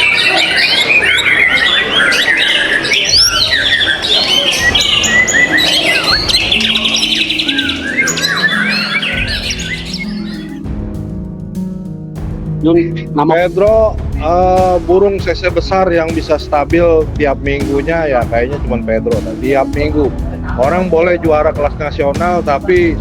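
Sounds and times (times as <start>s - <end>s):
birds whistling and chirping: 0.0s - 10.7s, 17.6s - 23.0s
fast bird trill: 0.0s - 10.7s
background music with low notes: 3.1s - 23.0s.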